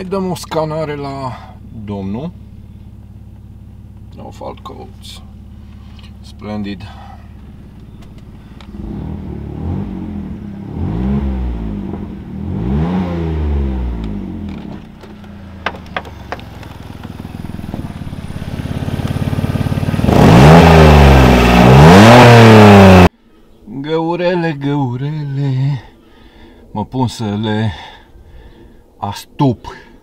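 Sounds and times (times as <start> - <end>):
harsh car engine idling and revving: 0.0 - 23.1.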